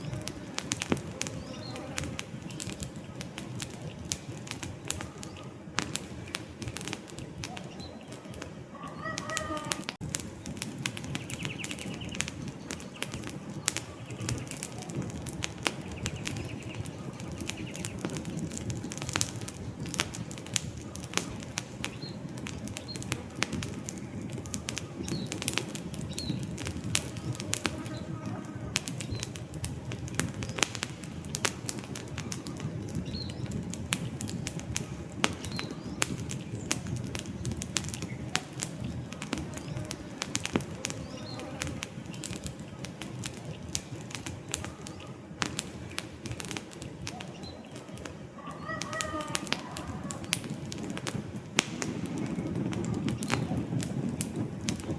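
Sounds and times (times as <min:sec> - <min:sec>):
bird chirps: 0:00.0 - 0:18.2
campfire crackling and popping: 0:00.0 - 0:54.9.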